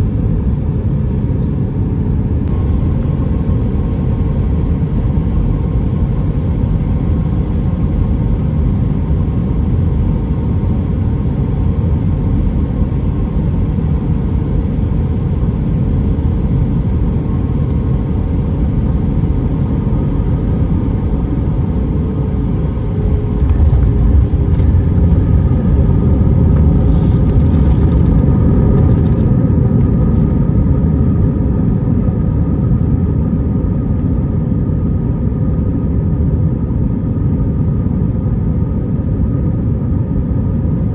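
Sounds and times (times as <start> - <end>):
jet engine rumble: 0.0 - 40.9.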